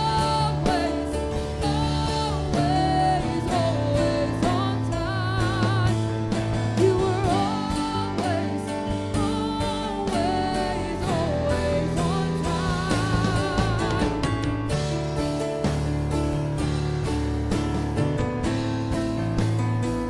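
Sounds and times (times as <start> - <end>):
person singing: 0.0 - 14.8
live band with bass and beat: 0.0 - 20.0.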